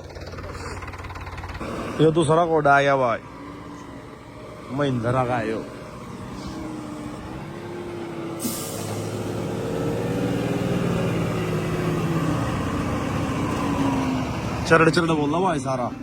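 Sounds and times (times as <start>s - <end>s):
diesel engine running: 0.0s - 16.0s
sudden hiss: 8.4s - 9.2s.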